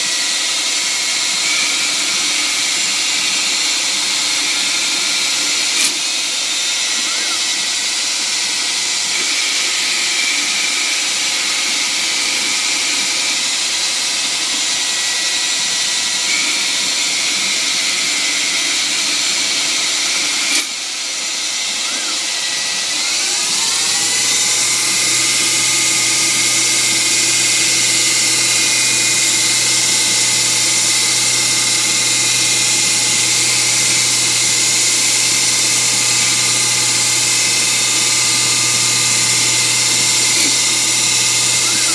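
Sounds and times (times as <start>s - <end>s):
lathe machine whine: 0.0s - 41.9s.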